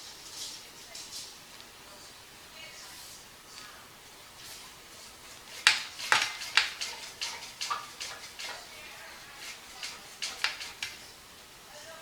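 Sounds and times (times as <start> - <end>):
sharp clicks and knocks: 5.5 - 8.7, 9.4 - 11.0.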